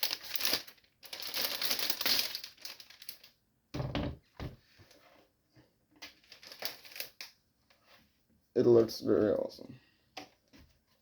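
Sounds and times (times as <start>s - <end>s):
packaging crinkling and rustling: 0.0s - 3.4s, 6.0s - 7.4s.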